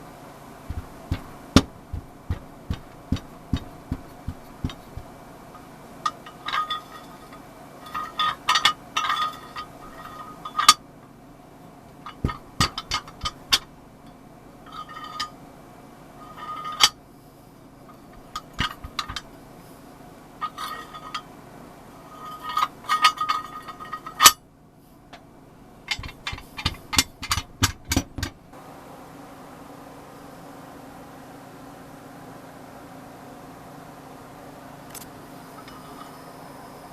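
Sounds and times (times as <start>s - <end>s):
faint steady hum: 0.0s - 36.9s
metal parts clinking and knocking: 0.7s - 10.8s, 12.0s - 15.4s, 16.3s - 17.0s, 17.9s - 19.3s, 20.4s - 21.2s, 22.1s - 24.4s, 25.8s - 28.4s.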